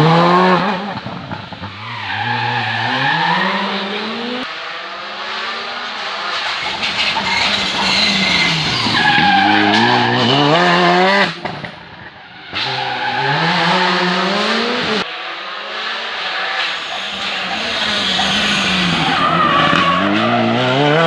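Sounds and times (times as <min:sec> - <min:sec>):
rally car engine revving: 0:00.0 - 0:21.0.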